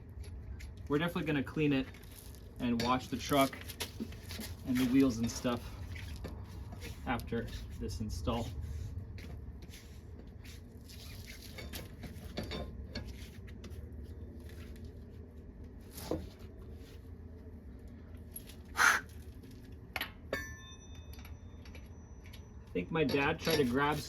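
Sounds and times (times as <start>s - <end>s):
low steady hum: 0.0s - 24.0s
tools and lug nuts clicking: 19.9s - 24.0s
metallic ring: 20.3s - 24.0s.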